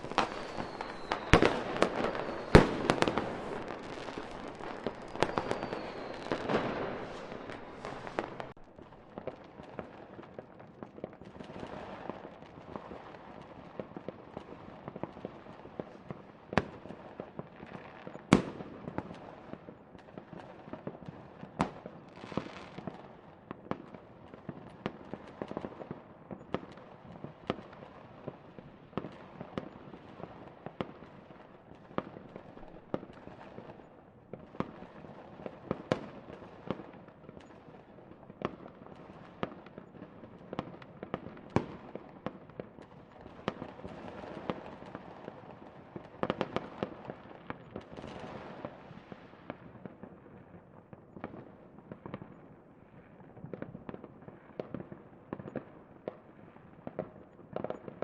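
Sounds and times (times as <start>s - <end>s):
fireworks crackling: 0.0s - 9.5s
fireworks bangs and pops: 0.0s - 58.0s.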